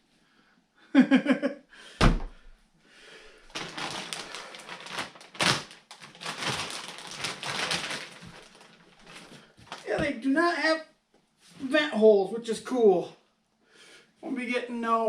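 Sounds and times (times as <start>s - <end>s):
heavy thud: 2.0s - 2.6s
packaging rustling and scraping: 3.5s - 10.0s.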